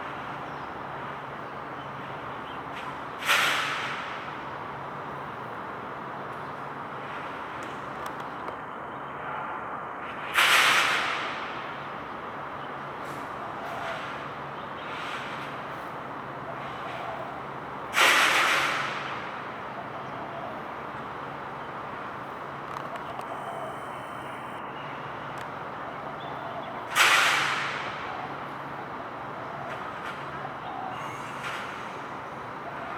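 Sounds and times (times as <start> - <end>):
outdoor background noise: 0.0 - 32.9.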